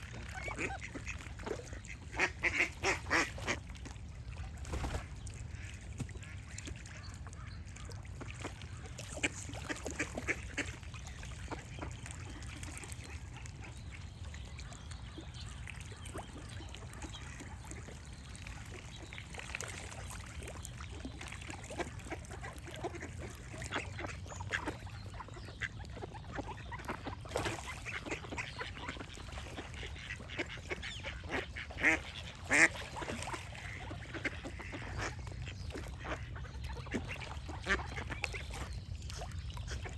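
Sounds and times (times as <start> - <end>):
ducks quacking: 0.1 - 3.6, 21.6 - 39.9.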